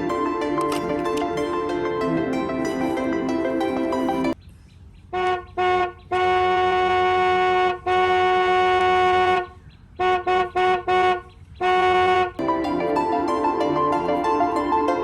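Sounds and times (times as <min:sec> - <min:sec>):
electronic toy horn honking: 0:00.6 - 0:01.0.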